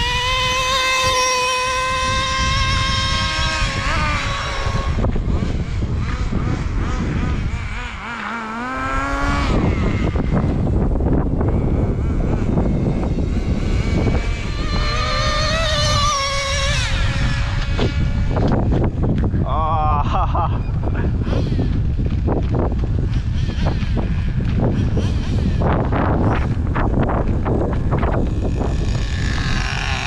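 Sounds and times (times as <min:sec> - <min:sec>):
rc truck engine revving: 0:00.0 - 0:19.0, 0:20.6 - 0:30.0.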